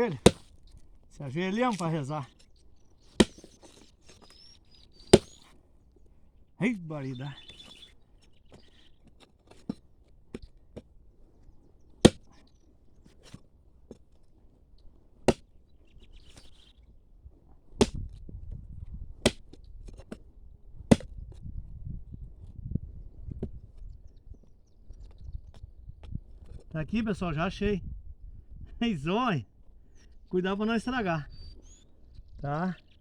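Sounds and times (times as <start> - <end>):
hoe chopping into soil: 0.0 - 0.6, 1.6 - 2.1, 3.0 - 4.4, 5.0 - 5.6, 11.9 - 12.4, 15.2 - 15.5, 17.7 - 18.1, 19.2 - 20.2, 20.8 - 21.3
earth scraping and crumbling: 0.0 - 2.6.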